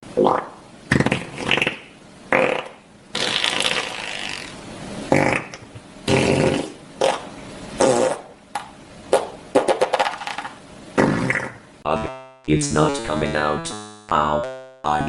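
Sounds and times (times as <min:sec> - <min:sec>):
farts: 0:00.2 - 0:08.3, 0:11.0 - 0:11.6.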